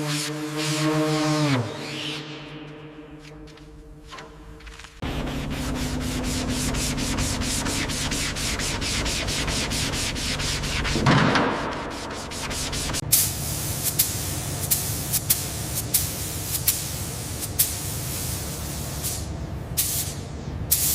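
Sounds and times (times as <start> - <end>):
rubbing or scraping strokes: 0.0 - 13.0
steady low hum: 2.2 - 20.9
hiss with sharp clicks: 13.1 - 20.9.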